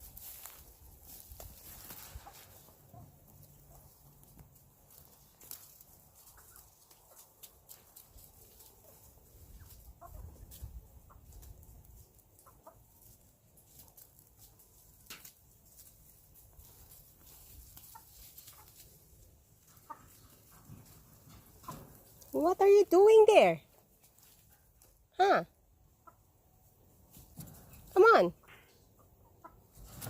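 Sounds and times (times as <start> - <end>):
light ticks and scratches: 0.0 - 22.4
chickens clucking: 0.1 - 22.3, 25.7 - 30.0.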